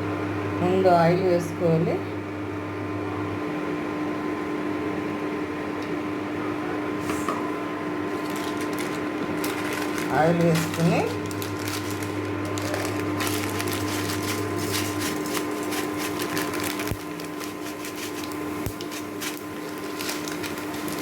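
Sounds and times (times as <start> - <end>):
steady hum: 0.0 - 21.0
oil crackling and popping in pan: 11.4 - 21.0.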